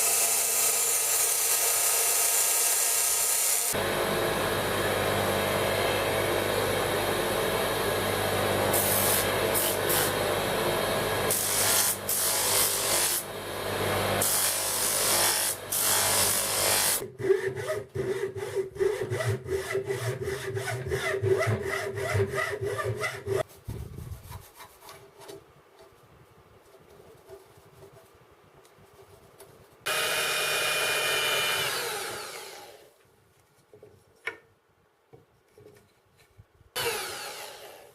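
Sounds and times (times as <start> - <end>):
hand strokes rubbing wood: 21.7 - 29.9.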